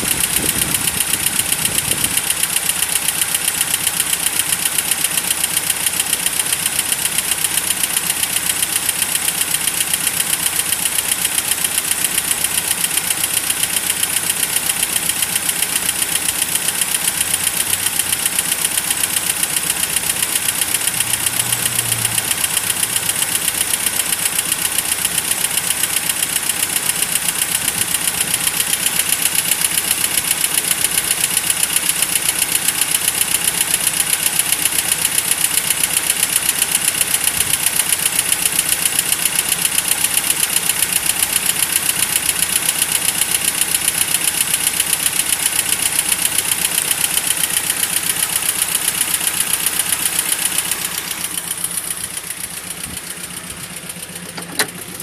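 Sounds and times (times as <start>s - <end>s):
engine idling with rapid ticking: 0.0s - 55.0s.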